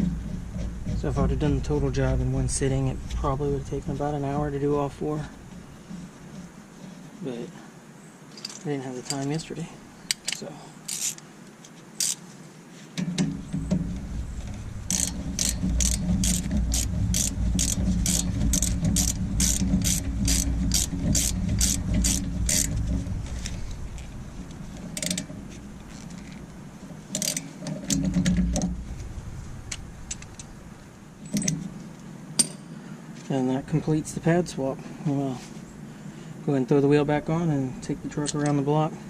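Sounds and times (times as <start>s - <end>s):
low steady rumble: 0.0s - 7.5s, 13.2s - 38.3s
hand ratchet clicking: 10.1s - 11.2s, 12.0s - 12.2s, 14.9s - 22.8s, 25.0s - 25.3s, 27.1s - 28.0s
scattered clicks and knocks: 13.0s - 24.1s, 27.1s - 28.8s.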